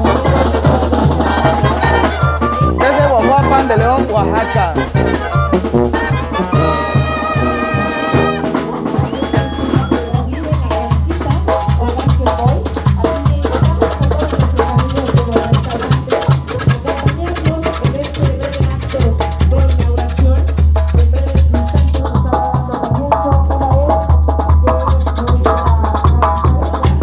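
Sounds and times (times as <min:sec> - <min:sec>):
brass band playing: 0:00.0 - 0:10.6
bass notes and drums: 0:00.0 - 0:27.0.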